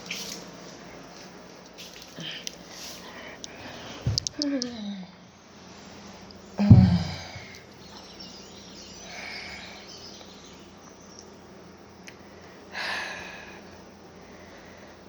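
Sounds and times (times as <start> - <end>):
soft breaths: 1.8 - 6.3, 12.2 - 15.0.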